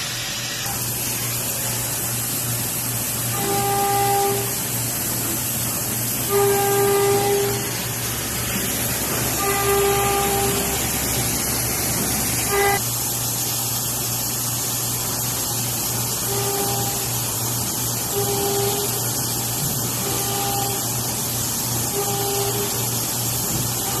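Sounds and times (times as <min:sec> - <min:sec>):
machining center hiss and hum: 0:00.0 - 0:24.0
warning buzzer: 0:03.3 - 0:04.6, 0:06.3 - 0:07.7, 0:09.3 - 0:11.1, 0:18.1 - 0:19.0, 0:20.0 - 0:20.8, 0:21.9 - 0:22.8.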